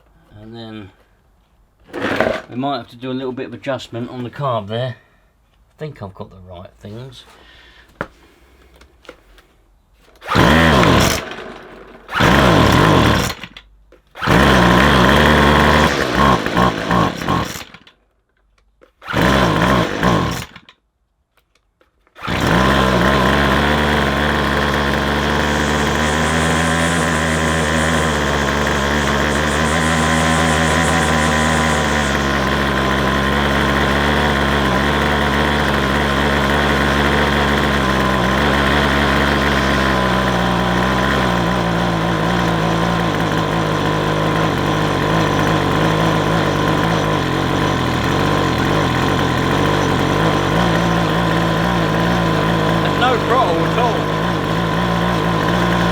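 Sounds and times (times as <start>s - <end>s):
strimmer engine firing and running: 1.9s - 2.5s, 10.2s - 18.0s, 19.0s - 20.7s, 22.2s - 55.9s.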